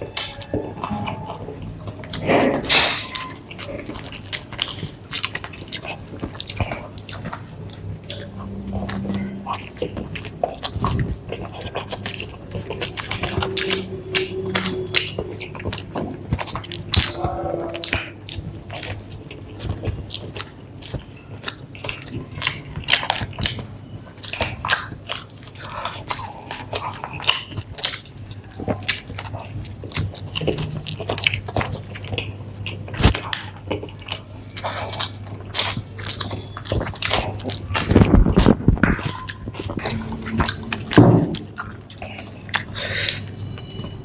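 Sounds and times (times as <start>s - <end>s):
low hum: 0.0s - 19.2s, 38.4s - 42.6s
chewing and crunching food: 0.0s - 44.0s.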